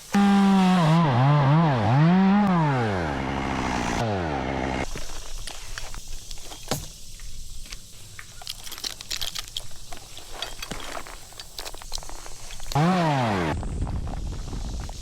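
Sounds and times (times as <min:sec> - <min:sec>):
chainsaw revving: 0:00.1 - 0:04.9, 0:12.7 - 0:13.6
rustling: 0:04.9 - 0:12.8
light metallic clinks: 0:05.4 - 0:12.8.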